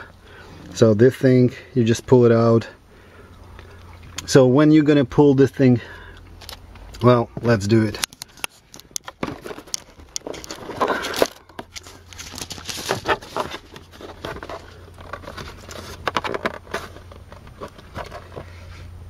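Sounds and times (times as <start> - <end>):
plastic squeaks: 8.2 - 18.7.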